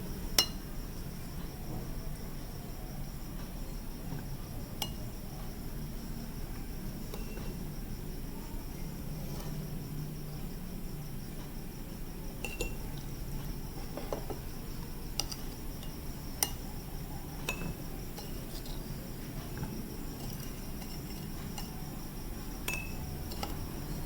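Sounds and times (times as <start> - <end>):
crickets chirping: 0.0 - 24.0
utensils clinking on glassware: 22.6 - 23.6.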